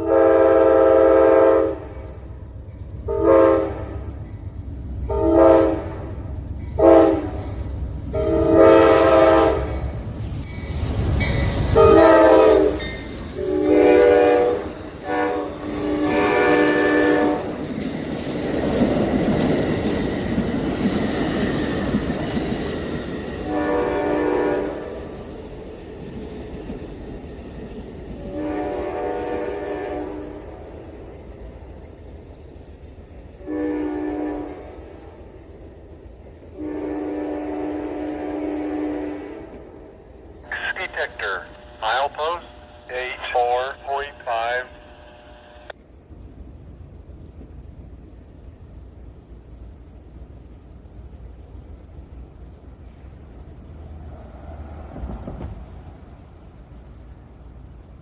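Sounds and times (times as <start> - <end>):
locomotive horn blasts: 0.0 - 2.0, 3.1 - 4.0, 5.1 - 6.0, 6.8 - 7.4, 8.1 - 9.7, 11.8 - 12.8, 13.4 - 17.5, 23.4 - 24.9, 28.3 - 30.4, 33.4 - 34.7, 36.5 - 39.6
train rumbling past: 0.0 - 58.0.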